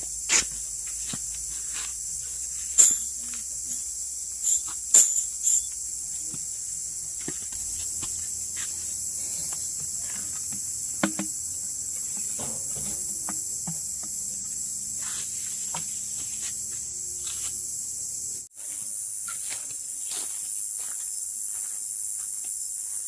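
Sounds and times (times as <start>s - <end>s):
high-pitched insect chorus: 0.0s - 23.0s
sharp knocks: 10.5s - 14.5s.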